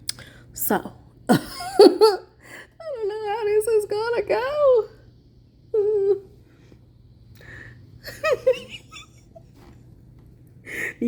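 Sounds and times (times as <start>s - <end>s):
woman whimpering giggle: 1.3s - 2.3s, 5.8s - 6.3s, 8.1s - 9.5s
woman breathing: 2.4s - 2.8s, 6.4s - 8.0s, 10.6s - 11.0s.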